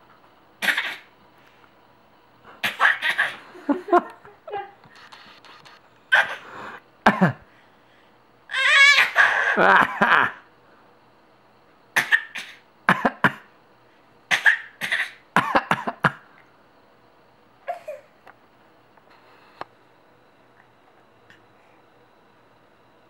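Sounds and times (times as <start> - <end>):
short coughs: 0.6 - 1.1, 6.1 - 6.5, 12.0 - 13.5, 14.3 - 16.2.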